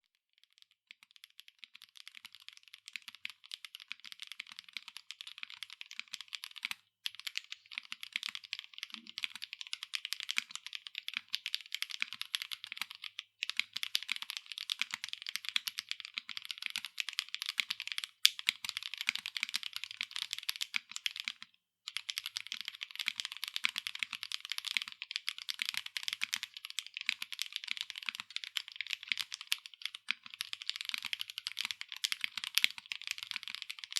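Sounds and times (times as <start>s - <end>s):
fast typing on mechanical keyboard: 0.9s - 33.9s.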